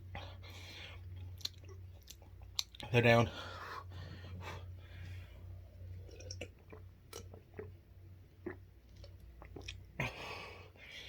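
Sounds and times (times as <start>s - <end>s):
low steady hum: 0.0s - 11.0s
wet mouth smacks and clicks: 1.3s - 2.8s.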